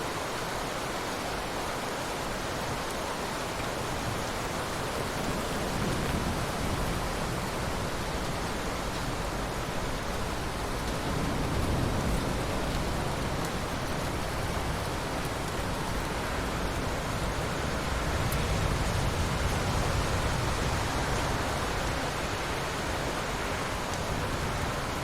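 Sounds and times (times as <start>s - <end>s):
heavy rain hiss: 0.0s - 25.0s
faint raindrop ticks: 10.6s - 17.3s, 23.9s - 24.2s.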